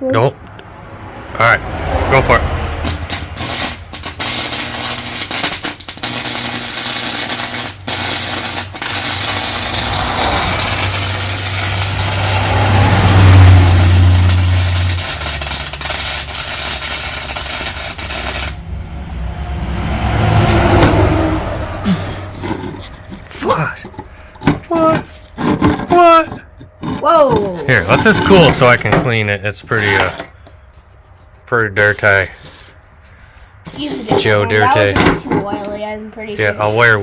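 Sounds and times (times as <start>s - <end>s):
electric arc welding crackle: 2.9s - 18.8s
low hum: 6.2s - 29.0s.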